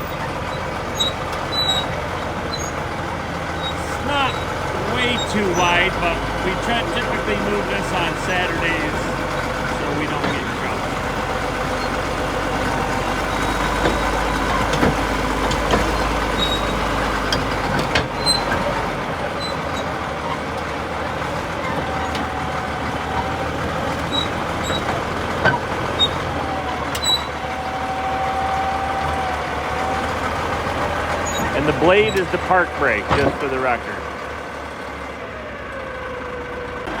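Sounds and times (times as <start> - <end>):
diesel engine running: 0.0 - 37.0.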